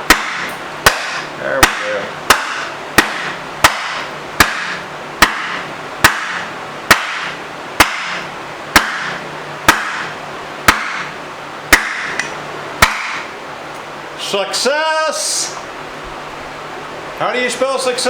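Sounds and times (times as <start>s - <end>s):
hammer striking metal: 0.0s - 13.3s.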